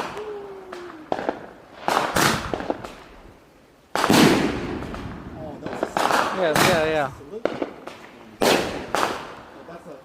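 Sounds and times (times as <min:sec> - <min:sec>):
roman candle firing bangs: 0:01.1 - 0:03.0, 0:04.0 - 0:09.4.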